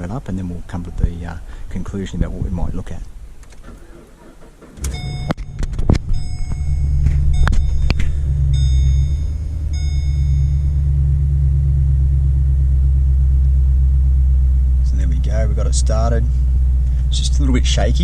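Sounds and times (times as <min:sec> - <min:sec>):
car engine starting and idling: 0:00.0 - 0:18.0
high beeping tone: 0:04.9 - 0:11.1.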